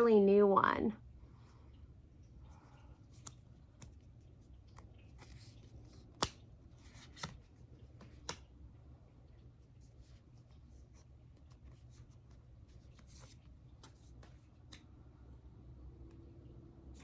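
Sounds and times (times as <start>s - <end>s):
cards sliding: 4.7s - 8.4s.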